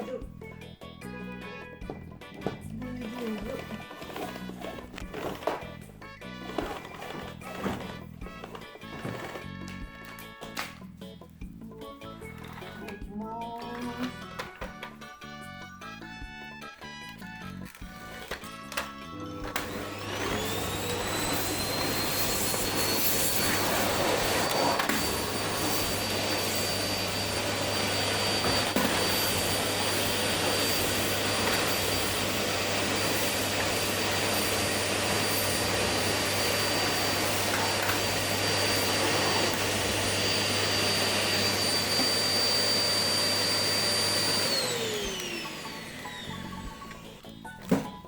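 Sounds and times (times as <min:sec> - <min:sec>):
vacuum cleaner running: 0:02.4 - 0:10.1, 0:18.1 - 0:47.8.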